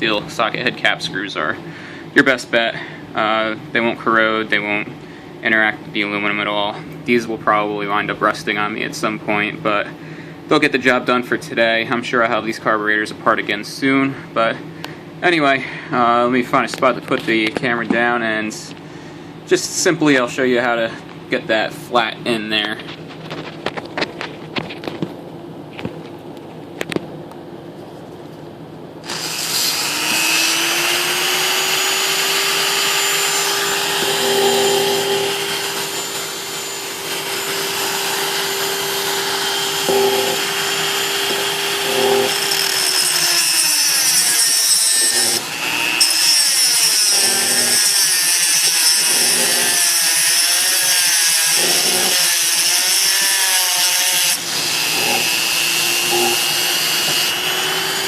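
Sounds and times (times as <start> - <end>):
cutoff wheel grinding metal: 29.0 - 58.0
rotary tool whining: 29.0 - 58.0.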